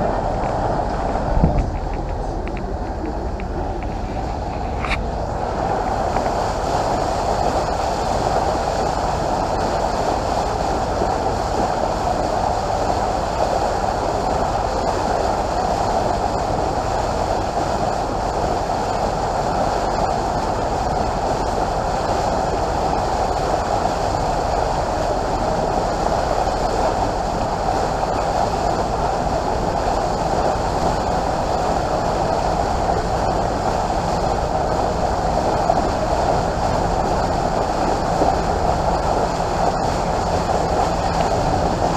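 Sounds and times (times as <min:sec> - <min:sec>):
boat engine drone: 0:00.0 - 0:41.9
water rushing past hull: 0:00.0 - 0:41.9.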